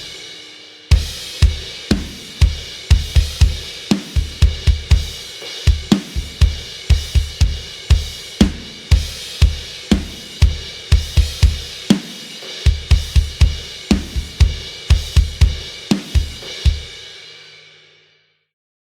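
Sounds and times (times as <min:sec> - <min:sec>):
hi-hat and cymbals: 0:00.0 - 0:17.9
kick drum: 0:00.9 - 0:11.8, 0:12.7 - 0:16.9
snare drum: 0:00.9 - 0:17.0.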